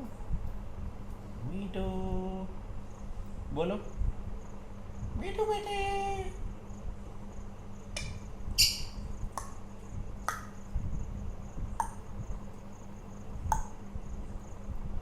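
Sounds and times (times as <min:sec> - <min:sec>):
parakeet chirps: 0:08.0 - 0:09.5.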